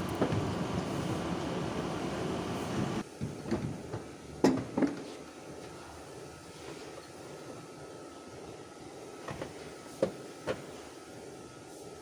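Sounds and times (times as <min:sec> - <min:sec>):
steady background noise: 0:00.0 - 0:12.0.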